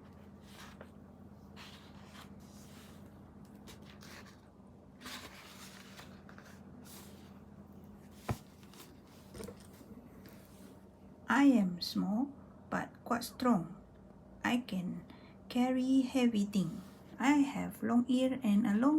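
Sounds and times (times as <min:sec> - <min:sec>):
soft rustles: 0:00.0 - 0:10.8
faint steady hum: 0:00.0 - 0:18.9.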